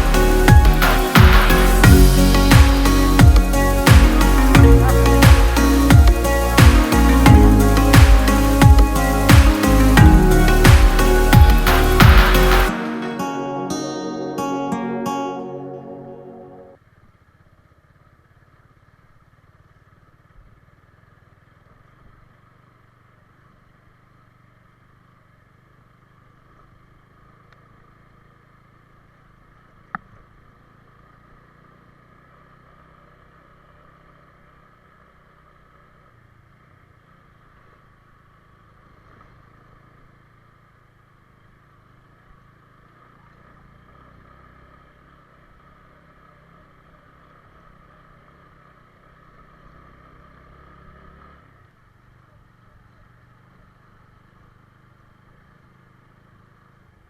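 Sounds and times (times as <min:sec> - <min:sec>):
vehicle engine humming: 0:00.0 - 0:13.3.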